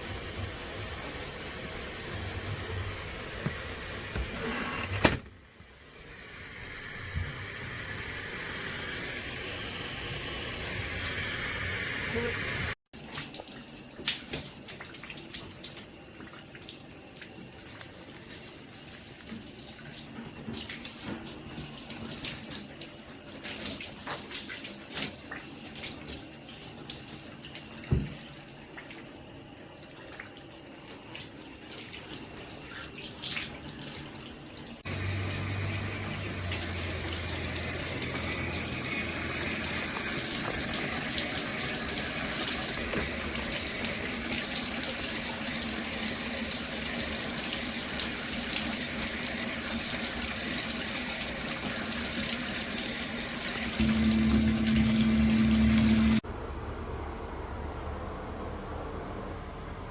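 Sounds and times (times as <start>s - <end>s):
faucet water splashing and trickling: 6.0s - 56.2s
rush of running water: 34.9s - 56.2s
low hum: 53.8s - 59.9s.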